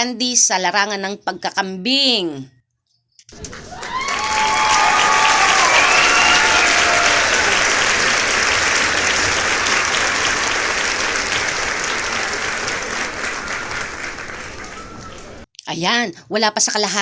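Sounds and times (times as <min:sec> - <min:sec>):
dense crackling noise: 0:03.3 - 0:15.4.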